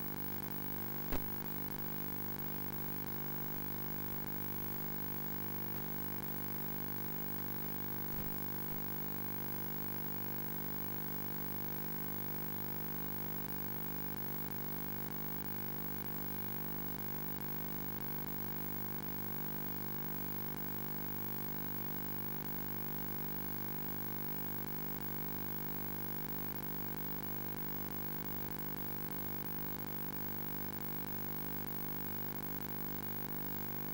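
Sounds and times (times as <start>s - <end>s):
steady electronic hum: 0.0s - 9.4s.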